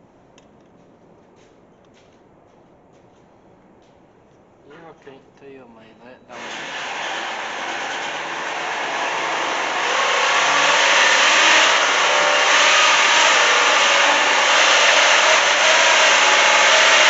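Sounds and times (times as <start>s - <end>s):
motor-driven machine running: 6.4s - 17.0s.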